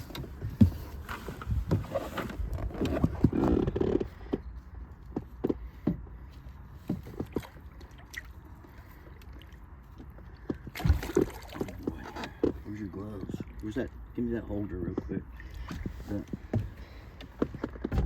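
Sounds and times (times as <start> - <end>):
gear knocking in a boat: 0.0 - 7.8, 14.9 - 18.0
faint water movement: 5.6 - 17.9.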